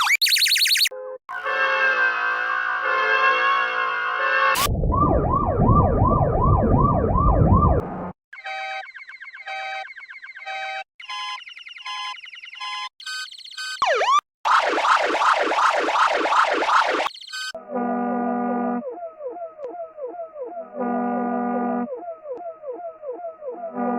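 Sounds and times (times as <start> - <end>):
fast warbling siren: 0.0 - 0.9, 4.6 - 7.9, 13.8 - 17.6, 18.8 - 23.9
sweeping whoop siren: 4.6 - 7.8, 18.8 - 23.9
rumble: 4.6 - 8.1.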